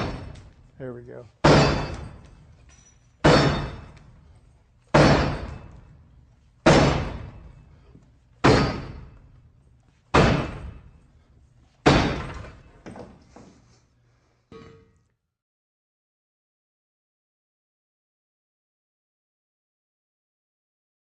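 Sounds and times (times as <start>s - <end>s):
battering ram striking door: 1.4s - 2.2s, 3.2s - 3.8s, 4.9s - 5.5s, 6.6s - 7.3s, 8.4s - 9.1s, 10.1s - 10.7s, 11.8s - 12.4s.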